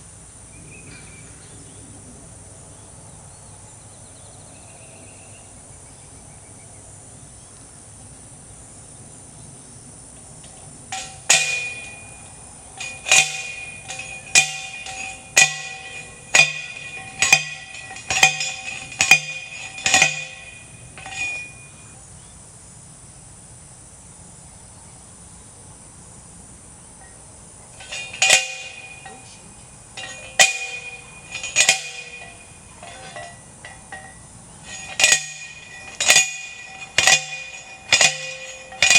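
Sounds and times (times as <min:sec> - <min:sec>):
post driver clanging on metal: 0:10.4 - 0:21.9, 0:27.7 - 0:38.9.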